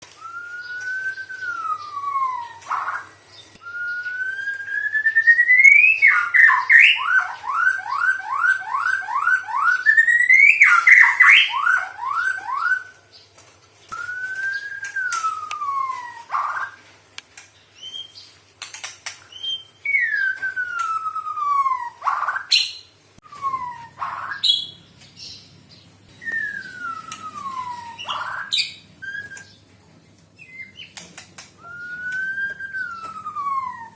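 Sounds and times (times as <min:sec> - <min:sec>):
bird mimicking a siren: 0:05.7 - 0:12.9, 0:23.2 - 0:24.8, 0:26.2 - 0:29.4, 0:31.6 - 0:33.9
bird clicks and call notes: 0:18.6 - 0:19.4, 0:26.3 - 0:29.7, 0:30.5 - 0:33.8.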